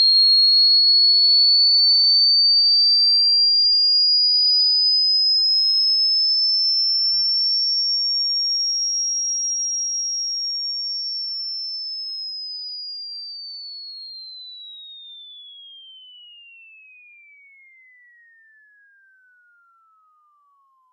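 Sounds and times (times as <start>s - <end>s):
electronic sine tone gliding: 0.0s - 4.2s.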